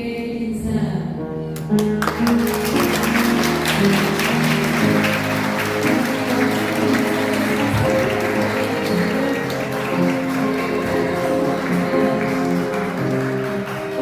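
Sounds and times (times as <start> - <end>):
instrumental music: 1.0 - 14.0
crowd applauding: 1.8 - 14.0.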